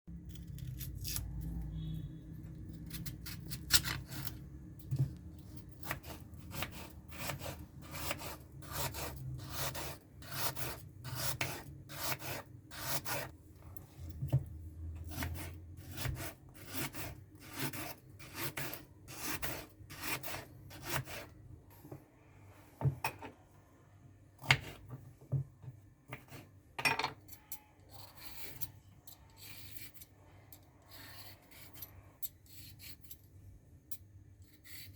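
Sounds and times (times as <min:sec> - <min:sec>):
knife cutting on wooden board: 0:05.8 - 0:13.3, 0:15.0 - 0:21.3.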